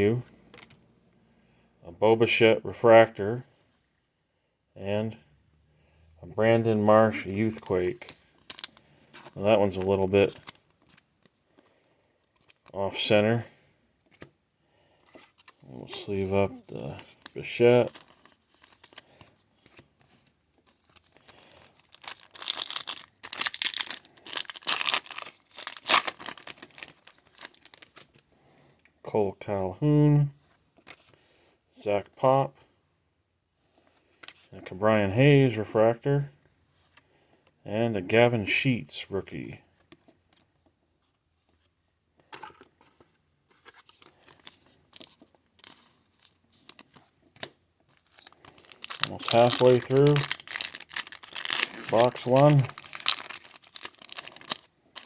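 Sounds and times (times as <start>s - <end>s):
plastic packaging crinkling and tearing: 7.4s - 11.1s, 15.4s - 19.2s, 20.7s - 28.2s, 43.5s - 47.1s, 47.9s - 55.0s.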